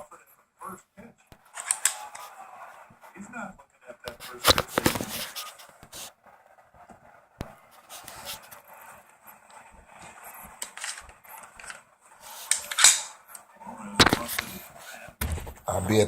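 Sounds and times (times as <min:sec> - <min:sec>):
handling rubbing and scraping: 0:04.1 - 0:16.0.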